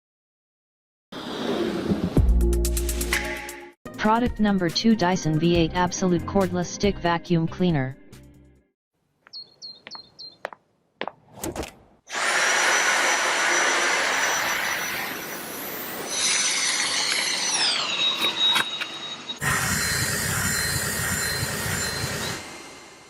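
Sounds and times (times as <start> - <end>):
vacuum motor whining: 12.1 - 23.0.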